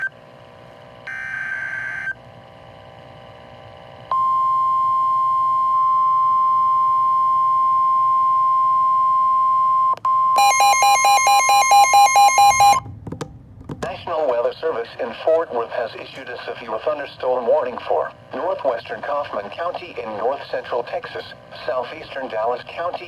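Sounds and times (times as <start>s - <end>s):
emergency alert beep: 4.1s - 12.9s
pulsing multi-tone alert: 10.4s - 12.8s
steady single alert tone: 10.4s - 12.8s.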